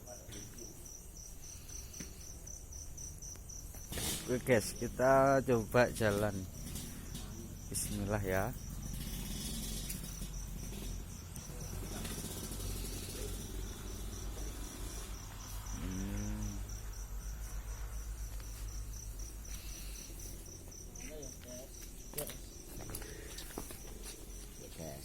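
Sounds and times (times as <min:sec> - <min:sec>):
crickets chirping: 0:00.0 - 0:25.0
short voice-like hum: 0:15.8 - 0:16.7.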